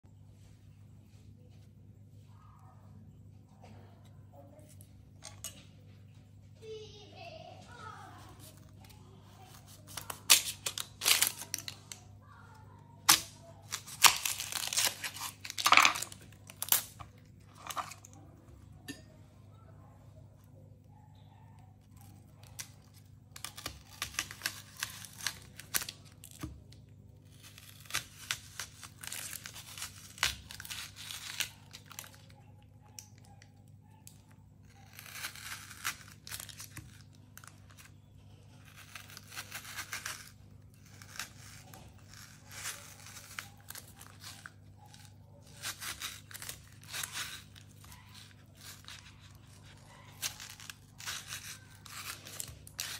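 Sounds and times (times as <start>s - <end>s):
vegetable skin tearing and crinkling: 7.9s - 19.0s, 21.8s - 52.9s.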